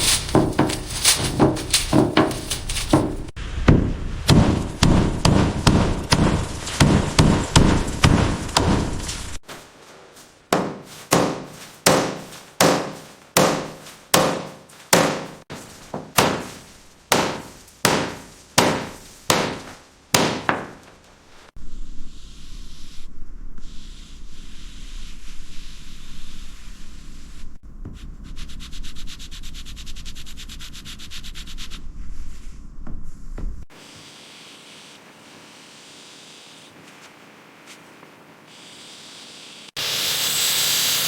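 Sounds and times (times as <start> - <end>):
hammer blows: 0.0 - 9.4.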